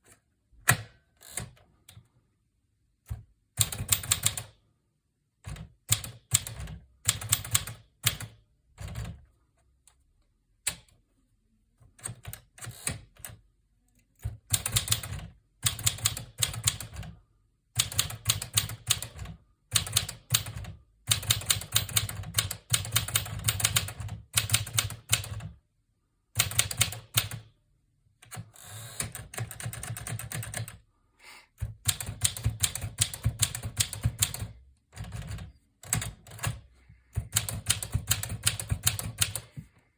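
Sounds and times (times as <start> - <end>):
typewriter keystroke clacks: 3.6 - 4.5, 5.5 - 9.2, 14.2 - 17.0, 17.8 - 25.5, 26.4 - 27.5, 29.0 - 30.7, 31.8 - 39.5.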